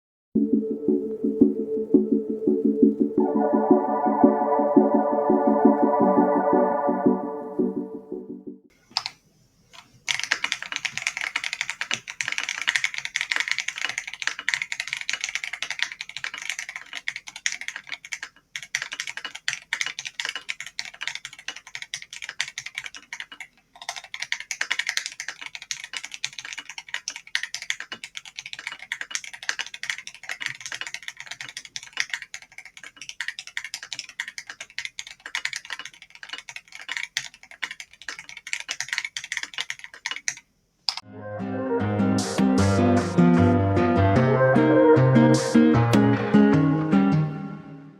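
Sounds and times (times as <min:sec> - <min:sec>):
mechanical keyboard clacking: 0:08.9 - 0:09.2, 0:10.1 - 0:41.0.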